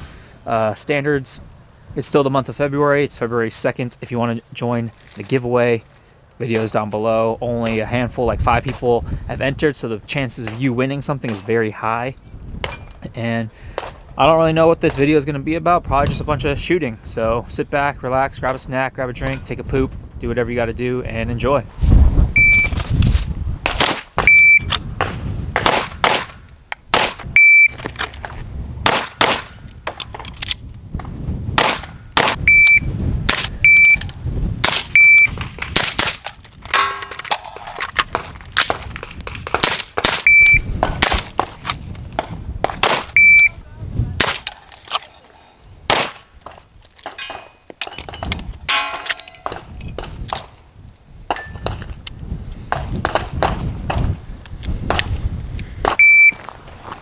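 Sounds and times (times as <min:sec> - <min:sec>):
gunshots: 0:23.7 - 0:24.4, 0:25.0 - 0:27.2, 0:28.8 - 0:29.6, 0:31.6 - 0:32.5, 0:34.6 - 0:35.0, 0:35.6 - 0:37.6, 0:39.4 - 0:41.5, 0:42.8 - 0:43.2, 0:44.2 - 0:44.6, 0:45.9 - 0:46.3.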